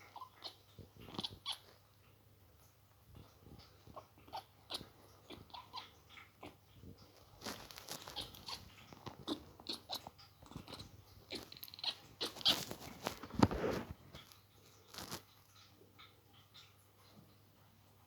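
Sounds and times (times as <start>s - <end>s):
kitten making clicking noises: 0.2s - 1.6s
kitten rasping sound: 7.5s - 13.8s.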